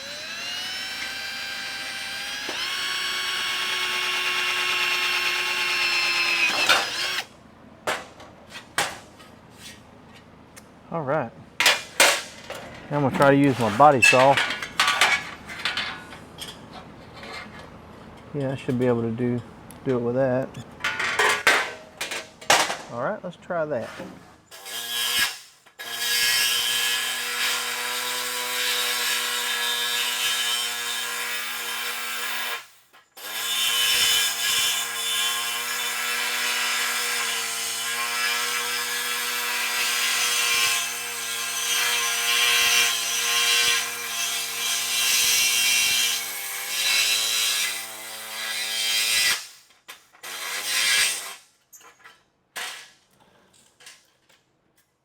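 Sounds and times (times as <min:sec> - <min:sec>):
saw cutting sheet metal: 0:00.0 - 0:07.3, 0:13.2 - 0:14.4, 0:23.8 - 0:49.6, 0:50.2 - 0:51.4.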